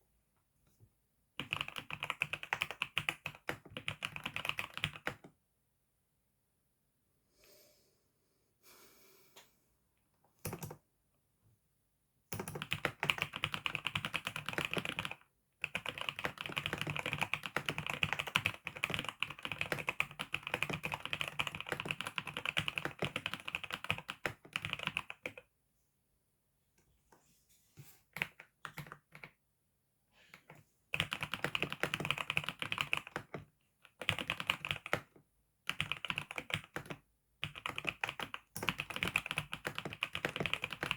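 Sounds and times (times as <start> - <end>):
computer keyboard typing: 1.4 - 5.3, 10.4 - 10.8, 12.3 - 25.4, 28.2 - 29.4, 30.4 - 40.9.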